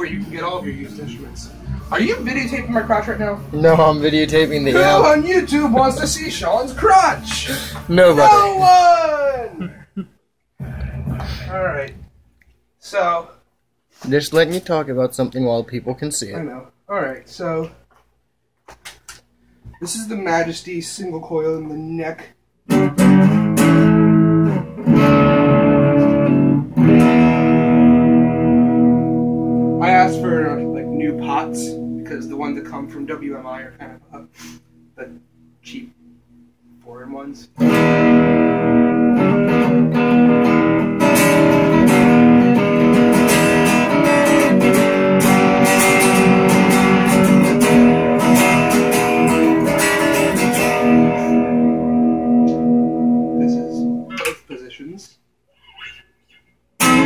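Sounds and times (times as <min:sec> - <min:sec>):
electric guitar chords ringing: 0:00.0 - 0:08.6, 0:22.7 - 0:54.2, 0:56.8 - 0:57.0.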